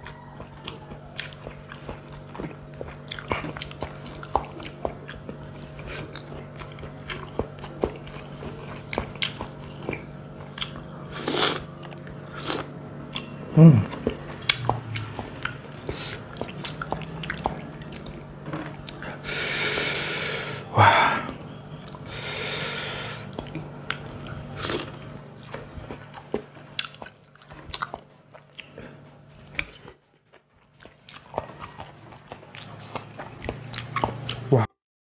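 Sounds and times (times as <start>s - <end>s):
person chewing and biting fish: 0.0s - 19.3s, 23.2s - 34.5s
breathy hissing: 19.1s - 21.3s, 22.1s - 23.3s.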